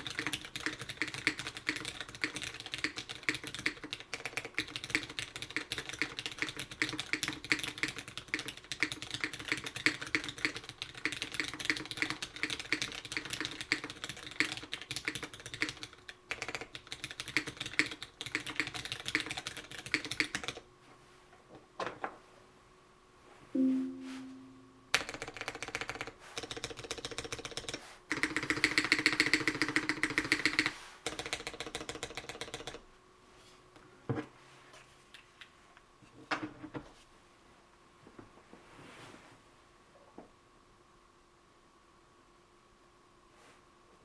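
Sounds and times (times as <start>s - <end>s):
mechanical keyboard typing: 0.0s - 20.6s, 25.0s - 32.8s.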